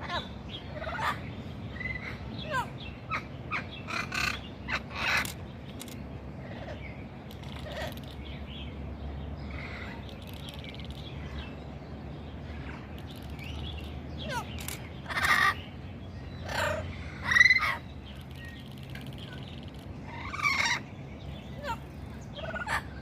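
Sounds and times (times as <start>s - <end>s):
parrot squawking: 0.0s - 5.4s, 7.6s - 8.1s, 14.2s - 15.6s, 16.4s - 17.9s, 20.1s - 20.8s, 21.6s - 22.9s.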